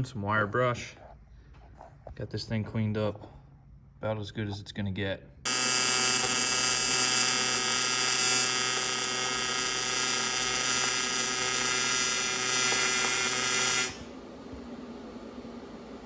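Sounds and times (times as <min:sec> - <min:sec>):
welding arc buzzing hiss: 0:05.5 - 0:14.2.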